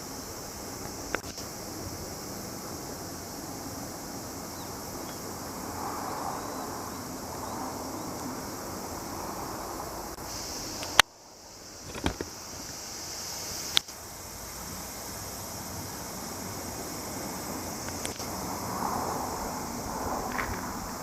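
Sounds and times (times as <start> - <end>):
insects calling: 0.0 - 21.0
sharp click: 11.8 - 12.3.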